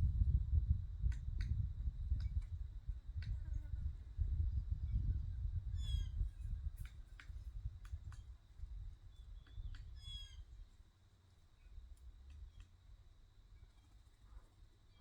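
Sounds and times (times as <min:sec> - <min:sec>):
low rumble: 0:00.0 - 0:03.1.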